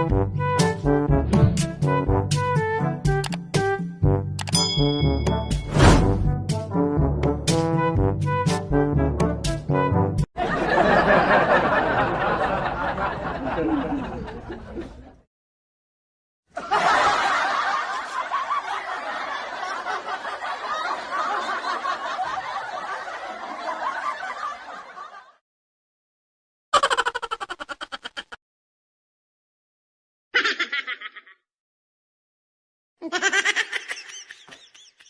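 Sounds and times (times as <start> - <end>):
laughter sound effect: 10.4 - 15.2, 16.5 - 25.4, 26.8 - 28.4, 30.4 - 31.4, 33.0 - 35.0.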